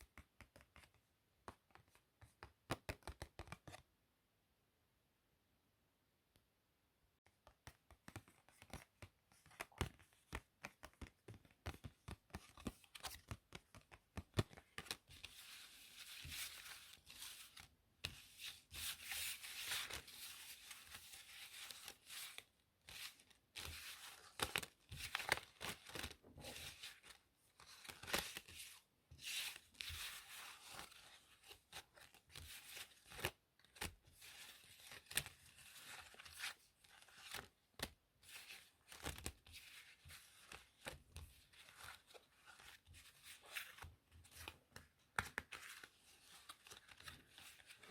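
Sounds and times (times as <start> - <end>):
playing cards clicking and snapping: 2.4 - 3.8, 7.4 - 15.0
cards sliding and rustling: 11.8 - 47.9.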